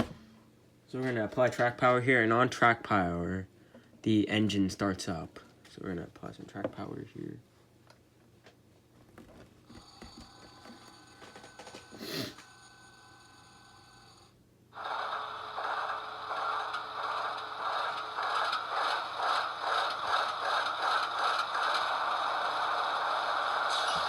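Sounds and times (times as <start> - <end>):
diesel locomotive engine starting up: 14.8 - 24.0.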